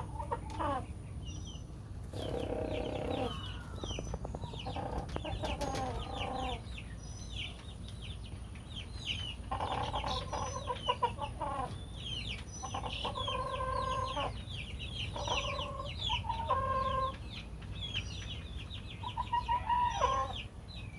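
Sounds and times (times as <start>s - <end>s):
rooster purring trill: 2.1s - 3.5s.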